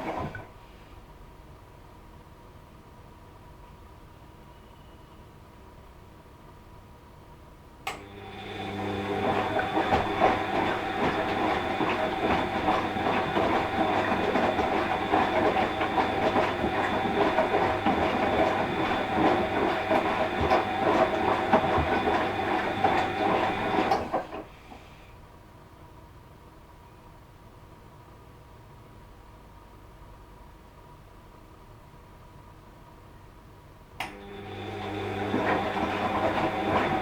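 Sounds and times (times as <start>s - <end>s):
washing machine drum turning: 8.0s - 24.4s, 34.0s - 37.0s.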